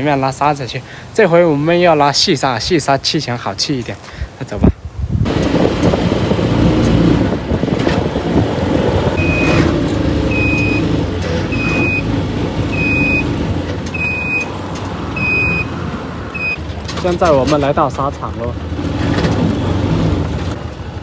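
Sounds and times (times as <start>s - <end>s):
tricycle rumbling along road: 5.2s - 21.0s.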